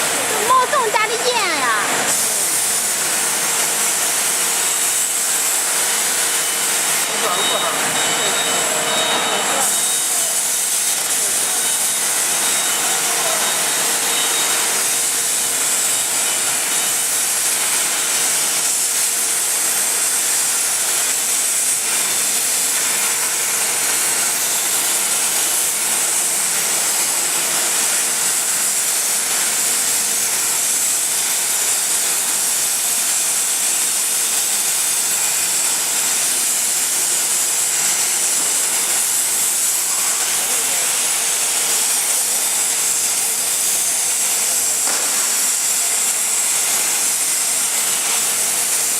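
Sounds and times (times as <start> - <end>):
plasma torch hissing: 0.0 - 48.9.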